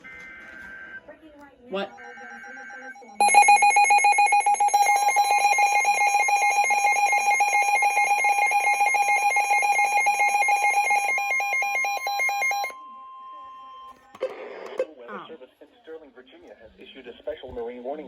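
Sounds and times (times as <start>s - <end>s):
rapidly pulsing alarm tone: 1.7s - 12.7s.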